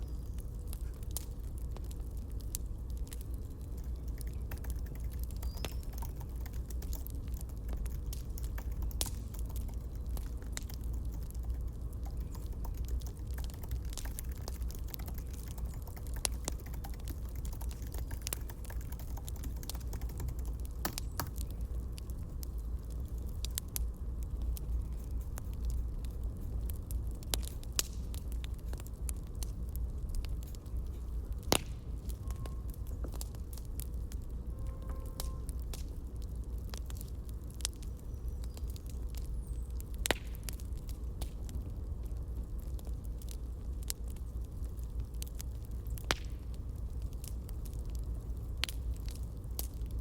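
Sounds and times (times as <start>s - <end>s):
campfire crackling and popping: 0.0s - 50.0s.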